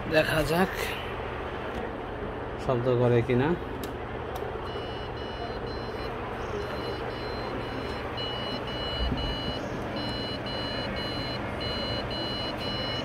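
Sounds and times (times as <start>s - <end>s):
low steady hum: 0.0s - 13.0s
computer speaker beeping: 4.7s - 13.0s.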